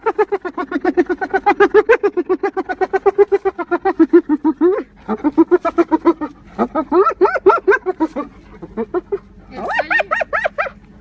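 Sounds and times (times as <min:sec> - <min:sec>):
animal giving short pitched calls: 0:00.0 - 0:10.8.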